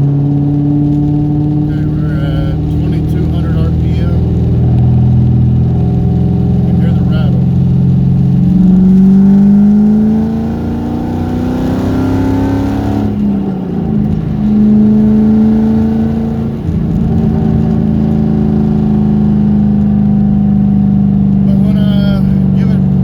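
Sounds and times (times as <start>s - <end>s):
car engine accelerating: 0.0s - 23.0s.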